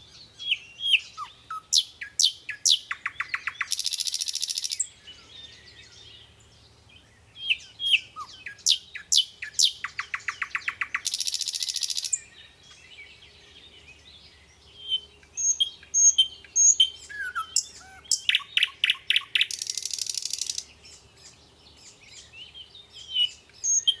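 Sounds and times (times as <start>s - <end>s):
small birds chirping: 0.0s - 24.0s
fast buzzy bird trill: 2.6s - 4.8s.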